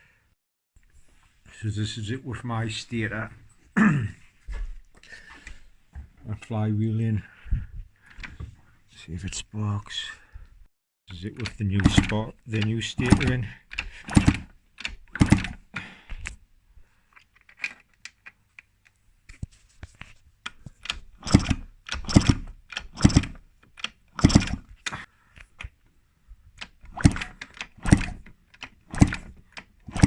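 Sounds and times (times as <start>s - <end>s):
engine being kick-started: 27.0s - 28.2s.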